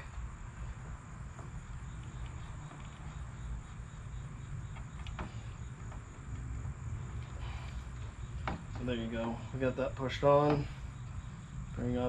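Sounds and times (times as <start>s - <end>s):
crickets chirping: 0.0s - 12.0s
low outdoor rumble: 0.0s - 12.0s.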